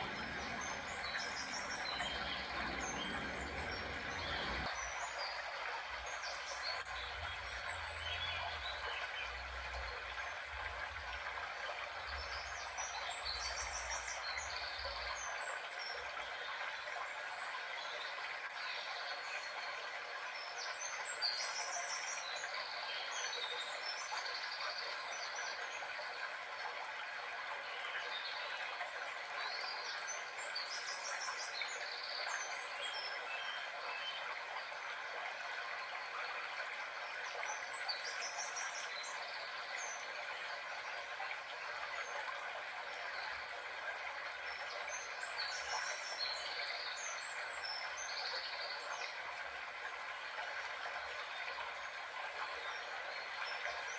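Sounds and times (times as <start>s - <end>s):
birds chirping: 0.0s - 5.4s
running water rushing: 0.0s - 53.9s.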